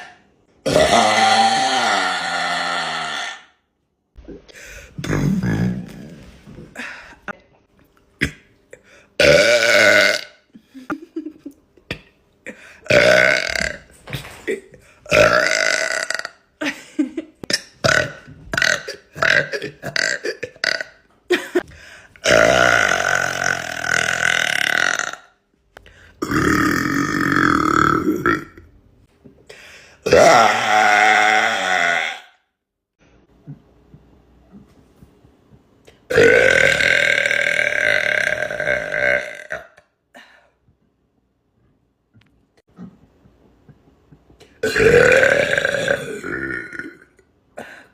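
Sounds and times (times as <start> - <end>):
woman burping loudly: 0.0 - 3.6, 9.2 - 11.0, 12.8 - 16.5, 17.4 - 21.6, 22.2 - 25.4, 26.2 - 28.7, 30.0 - 32.4, 36.1 - 39.9, 44.5 - 47.7.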